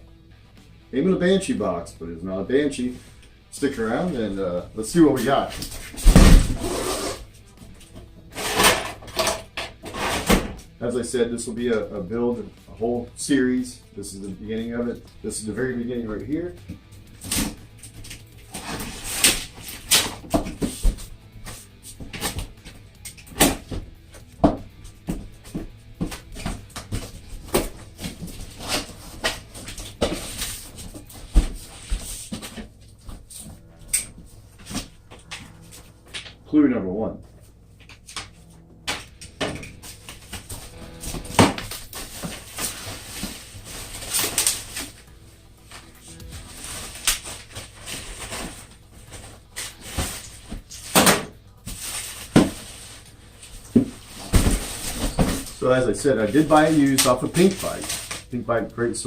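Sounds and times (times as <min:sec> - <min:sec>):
packaging rustling and crinkling: 0:46.2 - 0:50.9, 0:56.2 - 0:58.3.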